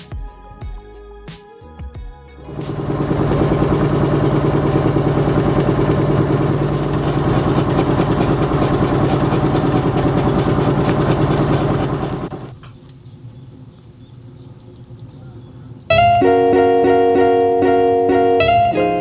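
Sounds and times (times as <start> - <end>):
engine running steadily: 2.5 - 12.5.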